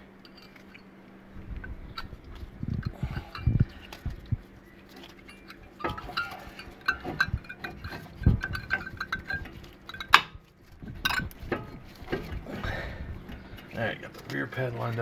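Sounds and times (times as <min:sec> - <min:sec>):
metallic clinks and taps: 0:00.2 - 0:00.9, 0:01.5 - 0:12.2.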